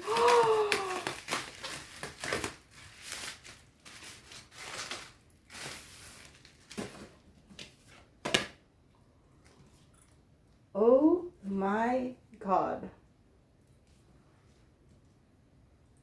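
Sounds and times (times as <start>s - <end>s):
packaging rustling and crinkling: 0.0s - 8.4s.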